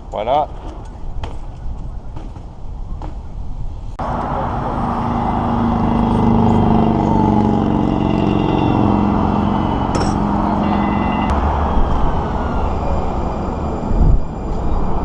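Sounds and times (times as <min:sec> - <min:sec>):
heavy vehicle engine droning: 0:04.0 - 0:15.0.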